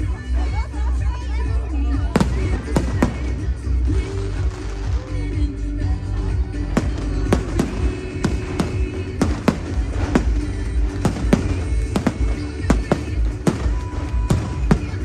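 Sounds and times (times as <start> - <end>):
music: 0.0 - 15.0
fireworks bangs: 2.2 - 5.0, 6.7 - 15.0
low rumble: 5.8 - 15.0.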